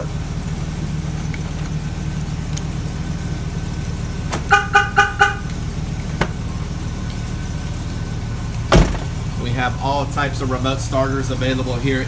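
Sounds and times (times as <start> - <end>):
truck engine idling: 0.0 - 12.0
alarm horn-like chirps: 4.4 - 5.6.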